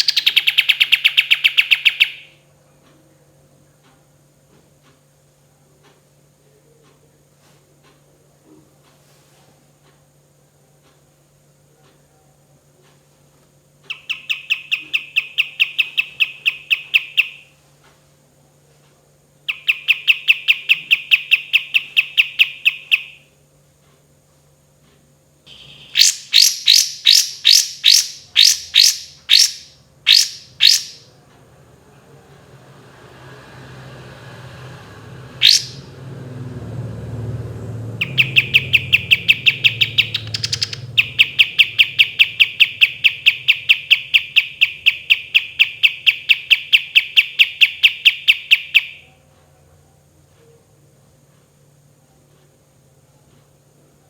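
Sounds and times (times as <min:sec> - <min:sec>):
songbird trilling: 0:00.0 - 0:02.4, 0:13.9 - 0:17.5, 0:19.5 - 0:23.2, 0:25.5 - 0:31.1, 0:35.4 - 0:35.9, 0:38.0 - 0:49.1.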